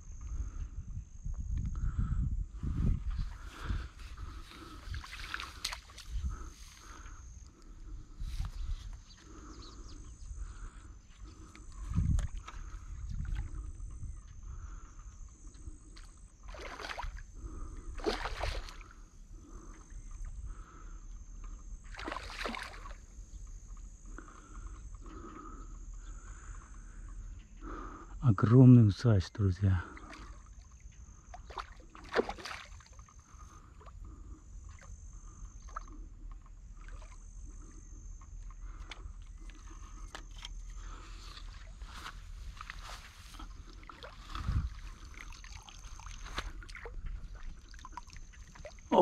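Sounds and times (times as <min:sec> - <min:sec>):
fish splashing in water: 0:16.4 - 0:17.2, 0:17.9 - 0:18.9, 0:21.9 - 0:23.0, 0:31.4 - 0:33.2, 0:43.8 - 0:48.9
rhythmic chorus of calling animals: 0:23.0 - 0:28.2.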